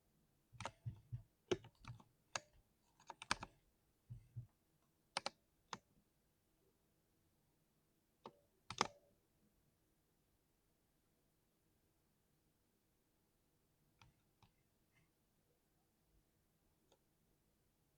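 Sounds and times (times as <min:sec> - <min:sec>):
mechanical keyboard typing: 0:00.6 - 0:03.6, 0:08.7 - 0:09.0.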